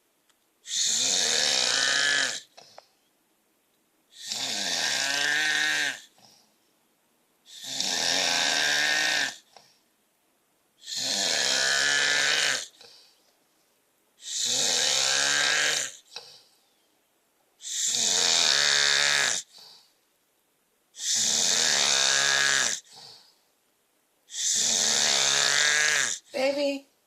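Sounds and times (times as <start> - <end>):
man snoring loudly: 0.7 - 2.6, 4.2 - 6.1, 7.5 - 9.5, 10.8 - 12.8, 14.2 - 16.0, 17.6 - 19.6, 21.0 - 23.1, 24.3 - 26.3.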